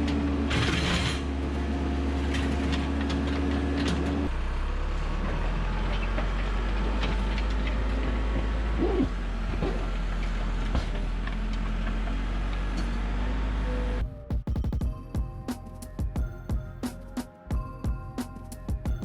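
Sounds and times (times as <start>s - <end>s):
backhoe engine running: 0.0s - 14.2s.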